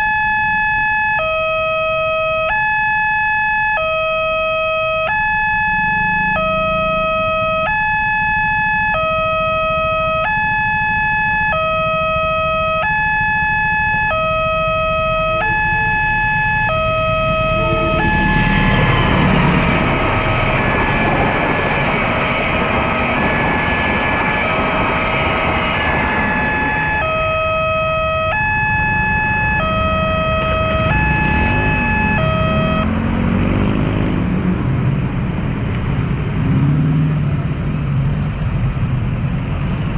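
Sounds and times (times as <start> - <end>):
two-tone crossing alarm: 0.0 - 33.4
train passing rushing: 15.6 - 39.9.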